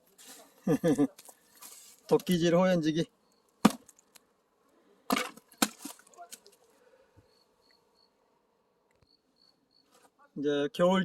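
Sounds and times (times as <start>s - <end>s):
axe striking a log: 3.6s - 4.0s, 5.1s - 6.1s.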